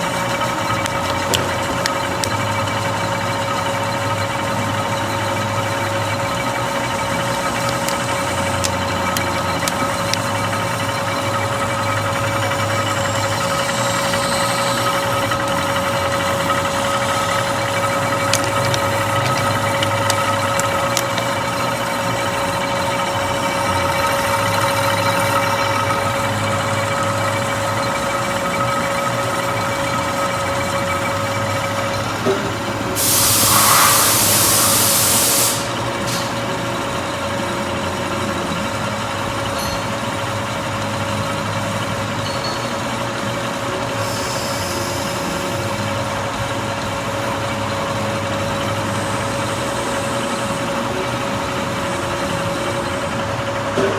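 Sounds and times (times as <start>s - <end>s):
machine tool humming and whining: 0.0s - 53.9s
loud hiss: 33.0s - 36.4s.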